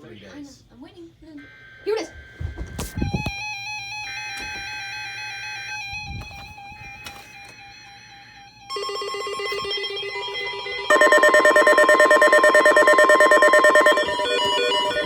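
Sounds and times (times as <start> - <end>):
pulsing electronic alarm: 7.9 - 15.0
loud steady alert tone: 10.8 - 15.0.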